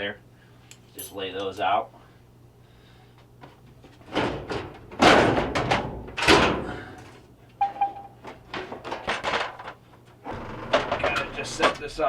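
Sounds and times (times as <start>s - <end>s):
sheet metal thunks and knocks: 4.0s - 6.9s, 10.6s - 12.0s.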